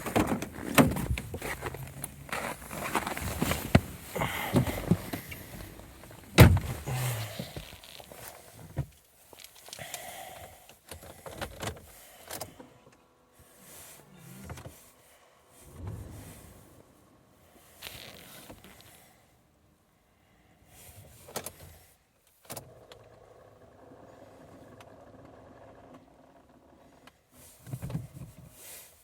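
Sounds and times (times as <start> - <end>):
clicks creaks and rustling: 0.0 - 10.0
loud thunk: 6.4 - 6.9.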